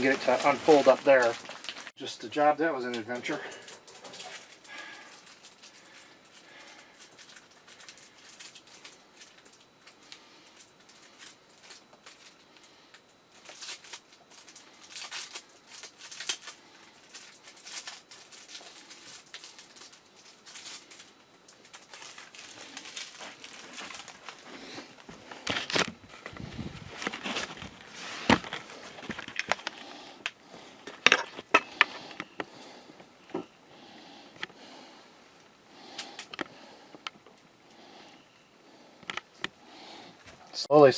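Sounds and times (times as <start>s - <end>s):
plastic packaging crinkling: 0.0s - 32.7s.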